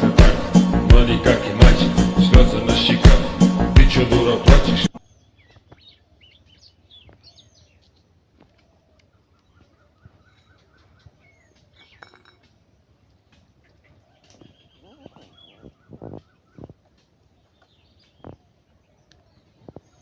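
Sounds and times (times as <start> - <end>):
song with a beat: 0.0 - 4.9
faint bird chirps: 8.6 - 12.4, 13.5 - 20.0.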